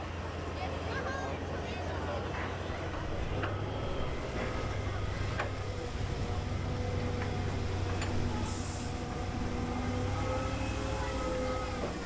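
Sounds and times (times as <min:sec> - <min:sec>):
heavy vehicle engine humming: 0:02.7 - 0:12.0
brief hiss: 0:08.4 - 0:09.4.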